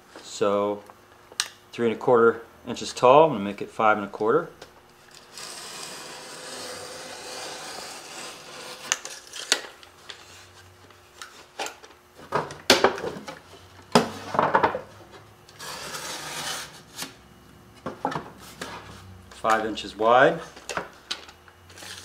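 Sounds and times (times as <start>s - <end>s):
hand tools scraping drywall: 15.6s - 16.8s.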